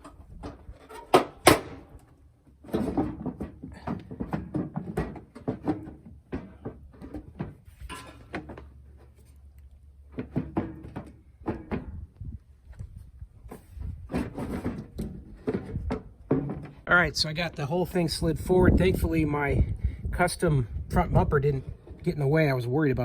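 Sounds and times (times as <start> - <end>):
plastic knocks clicks and scraping: 0.0 - 9.2, 14.1 - 16.8.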